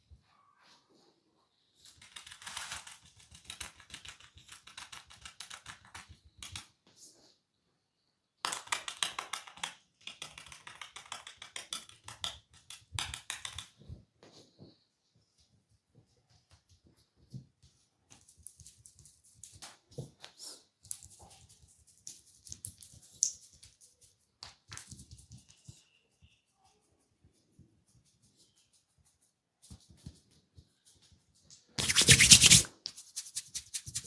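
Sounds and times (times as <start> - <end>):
crackly scratching on head: 31.8 - 34.0.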